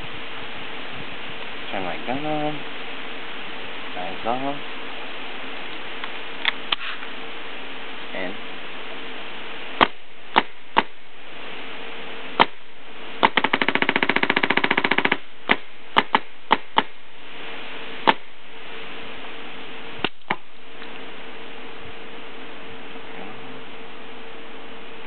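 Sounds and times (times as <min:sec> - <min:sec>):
low air hiss: 0:00.0 - 0:25.0
paintball marker shots: 0:09.8 - 0:10.9, 0:13.2 - 0:16.9, 0:18.0 - 0:18.2, 0:20.0 - 0:20.4.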